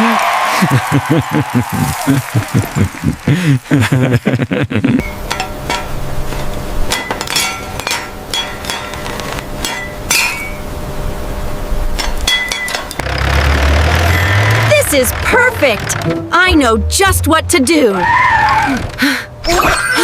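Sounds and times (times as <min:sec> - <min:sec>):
tool striking glass: 0:06.9 - 0:10.6, 0:12.0 - 0:13.3.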